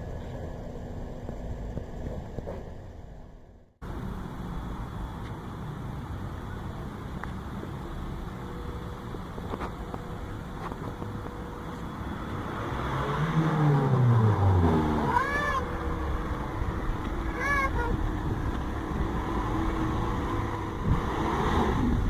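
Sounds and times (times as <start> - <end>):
car engine idling and revving: 0.0 - 22.0.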